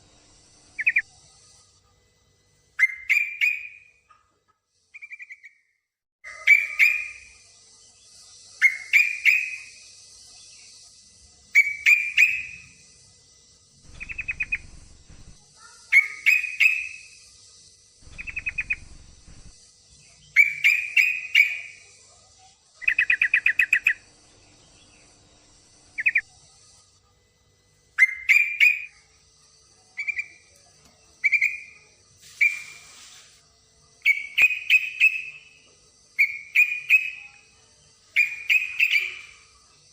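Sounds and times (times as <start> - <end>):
bird chirping: 0.8 - 1.1, 2.8 - 4.3, 8.0 - 10.7, 11.5 - 12.8, 13.8 - 17.2, 18.0 - 21.9, 22.8 - 26.3, 34.0 - 35.6, 36.2 - 37.4, 38.1 - 39.5.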